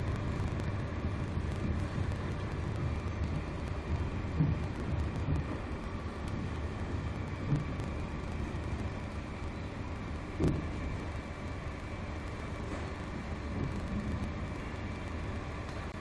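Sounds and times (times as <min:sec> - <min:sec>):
hot-air heater fans whirring: 0:00.0 - 0:16.0.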